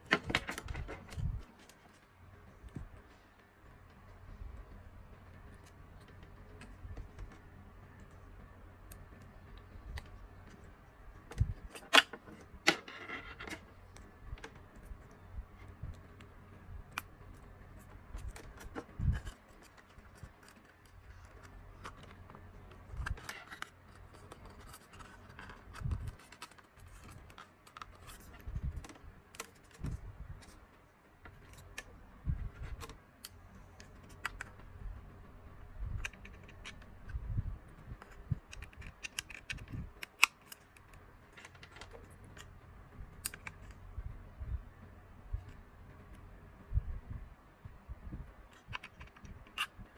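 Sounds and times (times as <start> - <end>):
plastic parts clicking and knocking: 0.0 - 1.8, 9.9 - 14.9, 16.9 - 30.6, 35.9 - 37.2, 38.0 - 42.6, 43.2 - 43.8, 48.5 - 49.8.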